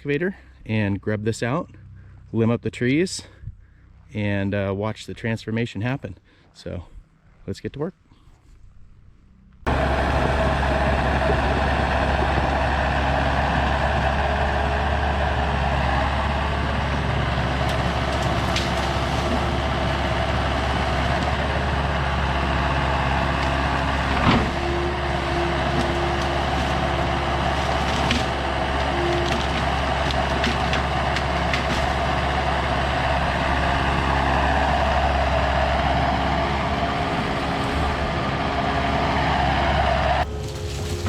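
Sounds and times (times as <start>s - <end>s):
diesel engine running: 9.2s - 41.0s.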